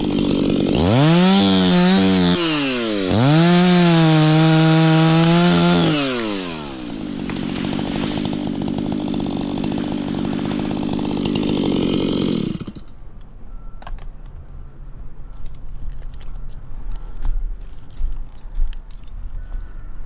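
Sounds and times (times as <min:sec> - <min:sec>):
chainsaw revving down and idling: 0:00.0 - 0:12.9.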